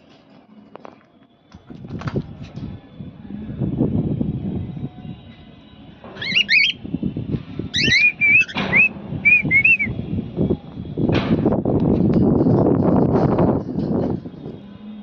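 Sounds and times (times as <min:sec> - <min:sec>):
wind buffeting microphone: 0:01.6 - 0:15.0
cockatiel whistling: 0:06.2 - 0:06.8, 0:07.7 - 0:09.9.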